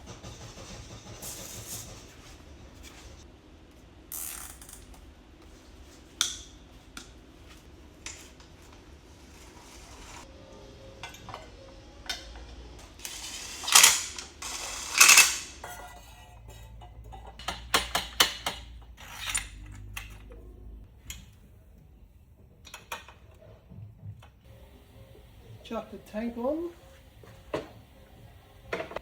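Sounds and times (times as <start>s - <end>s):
metal tool clicks and clanks: 13.6s - 15.8s, 17.1s - 20.2s.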